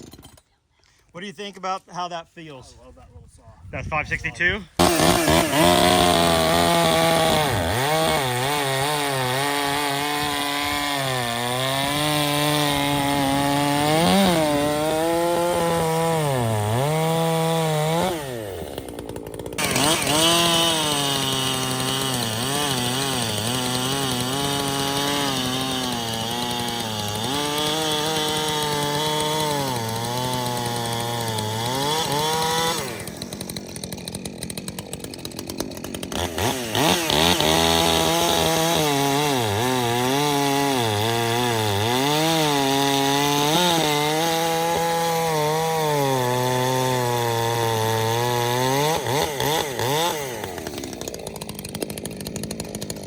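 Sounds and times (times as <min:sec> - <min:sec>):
chainsaw cutting wood: 0:00.0 - 0:00.6, 0:04.8 - 0:53.0.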